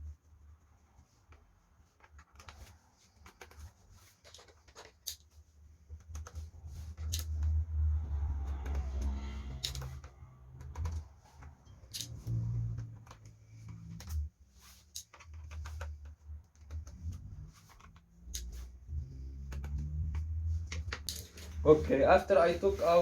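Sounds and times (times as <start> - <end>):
laptop being handled: 1.3 - 7.4, 8.5 - 18.7.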